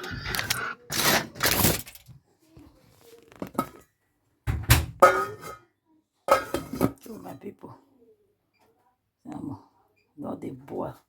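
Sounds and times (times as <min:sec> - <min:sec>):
pot and utensils scraping and knocking: 0:00.0 - 0:02.1, 0:03.3 - 0:03.9, 0:04.5 - 0:05.7, 0:06.3 - 0:07.4
utensils clattering: 0:00.0 - 0:02.1, 0:05.0 - 0:05.6, 0:06.3 - 0:07.0.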